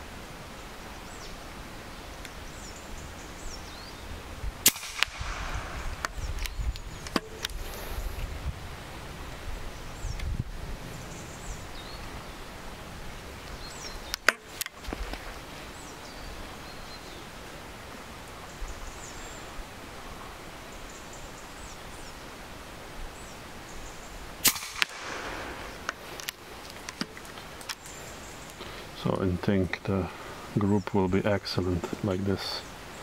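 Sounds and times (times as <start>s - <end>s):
birds chirping: 0.0s - 8.3s, 9.3s - 33.0s
air rifle shots: 4.6s - 6.2s, 24.4s - 25.9s.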